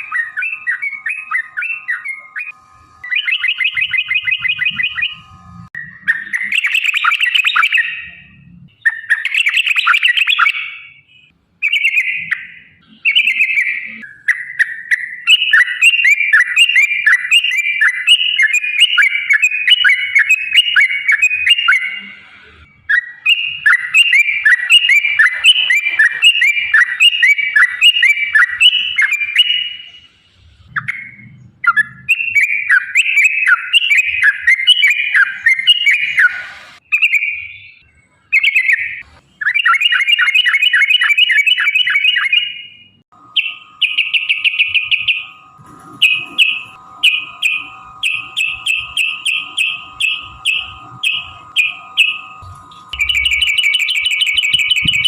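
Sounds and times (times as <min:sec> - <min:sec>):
bird chattering and bubbling calls: 0:22.9 - 0:29.8, 0:43.3 - 0:55.0.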